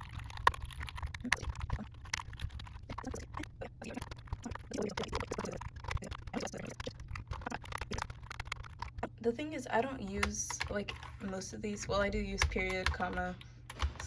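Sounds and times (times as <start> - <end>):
keyboard keys clicking: 0.0 - 9.0, 11.8 - 14.0.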